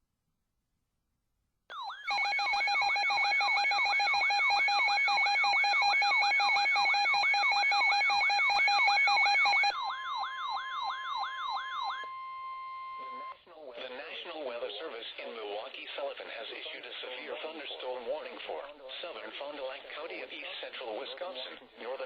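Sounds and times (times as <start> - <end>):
electronic siren wailing: 1.7 - 13.4
pulsing alarm tone: 1.7 - 13.4
steady radio alert tone: 2.1 - 15.2.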